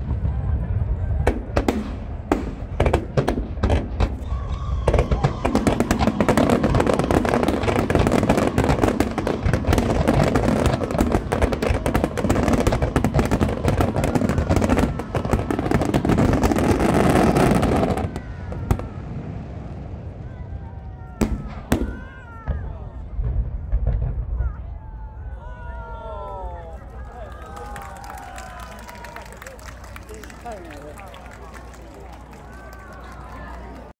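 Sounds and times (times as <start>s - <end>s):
fireworks bangs and crackle: 0.0s - 26.0s.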